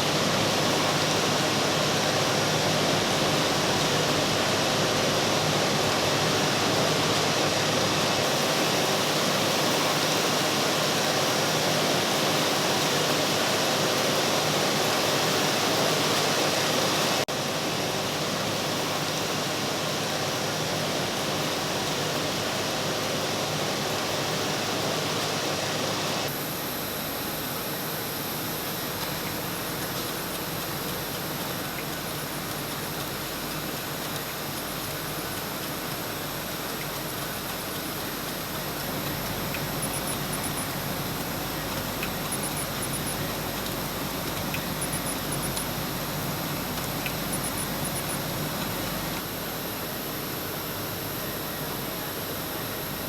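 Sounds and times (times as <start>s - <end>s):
factory machines running: 0.0s - 53.0s
faint steady hum: 17.4s - 53.0s.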